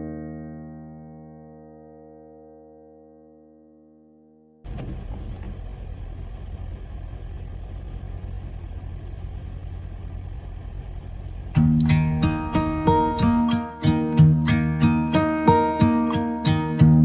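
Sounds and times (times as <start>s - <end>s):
acoustic guitar song: 0.0s - 4.6s, 11.6s - 17.0s
piano chord: 0.0s - 4.6s, 11.6s - 17.0s
car road noise on wet road: 4.7s - 13.2s.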